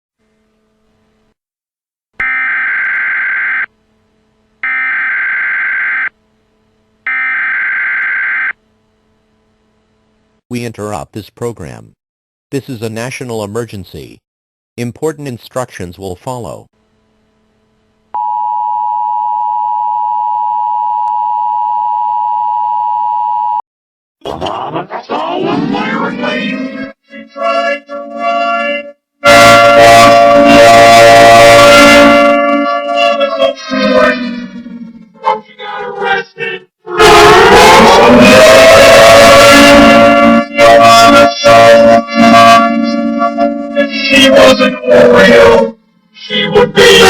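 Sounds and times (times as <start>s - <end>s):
digital data tone bursts: 2.2s - 3.7s, 4.6s - 6.1s
faint steady hum: 2.5s - 11.9s, 15.2s - 23.6s.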